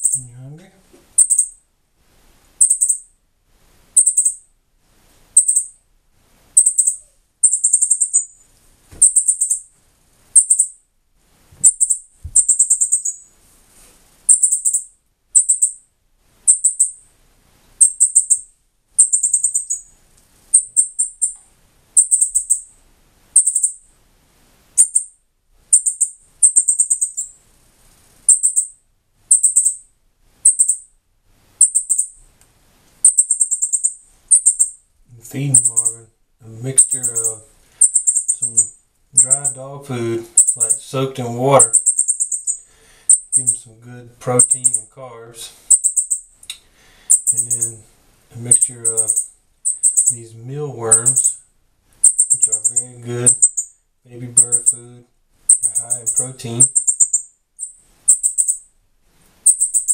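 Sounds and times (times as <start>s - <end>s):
young bird begging calls: 0.0s - 0.3s, 1.2s - 1.5s, 2.6s - 3.0s, 4.0s - 4.4s, 5.4s - 5.7s, 6.6s - 8.4s, 9.0s - 9.6s, 10.4s - 10.7s, 11.6s - 13.2s, 14.3s - 15.8s, 16.5s - 17.0s, 17.8s - 18.4s, 19.0s - 19.9s, 20.5s - 21.4s, 22.0s - 22.7s, 23.4s - 23.8s, 24.8s - 25.1s, 25.7s - 27.3s, 28.3s - 28.7s, 29.3s - 29.8s, 30.4s - 30.8s, 31.6s - 32.1s, 33.0s - 34.7s, 35.5s - 36.0s, 36.8s - 40.9s, 41.5s - 43.6s, 44.3s - 44.9s, 45.7s - 46.2s, 47.1s - 47.7s, 48.4s - 51.4s, 52.0s - 53.7s, 54.3s - 54.9s, 55.5s - 58.6s, 59.4s - 59.9s.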